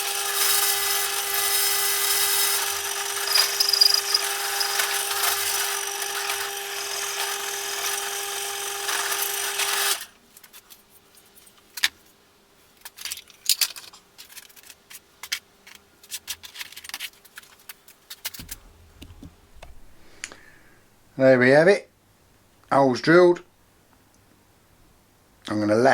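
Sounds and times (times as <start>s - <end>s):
power drill drilling: 0.0s - 10.1s.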